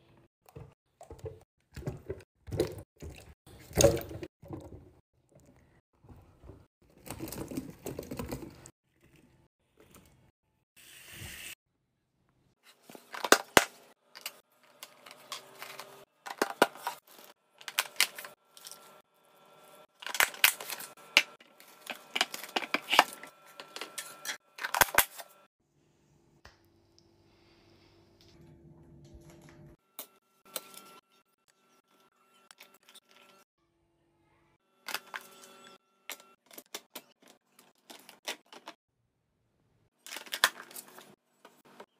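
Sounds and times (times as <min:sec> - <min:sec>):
containers clicking and knocking: 0:13.1 - 0:17.0.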